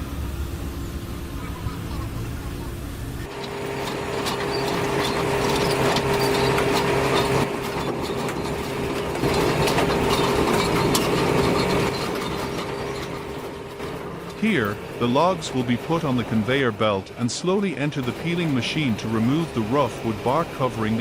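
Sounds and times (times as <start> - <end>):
machinery humming: 0.0 - 21.0
steady high machine tone: 0.0 - 21.0
clanks and knocks: 3.3 - 16.7.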